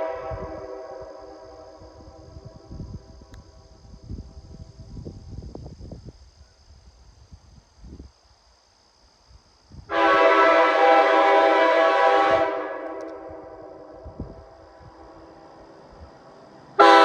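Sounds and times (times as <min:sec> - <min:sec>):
locomotive horn blast: 0:00.0 - 0:02.0, 0:09.9 - 0:14.0, 0:16.8 - 0:17.0.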